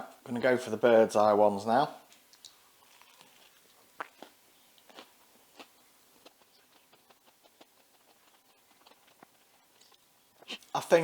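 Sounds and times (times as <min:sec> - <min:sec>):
crunching from chewing: 0:02.3 - 0:10.8.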